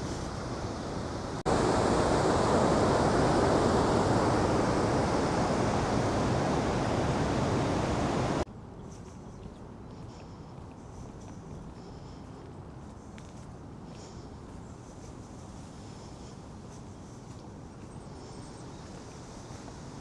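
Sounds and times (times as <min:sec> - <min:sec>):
rushing river water: 0:00.0 - 0:08.4.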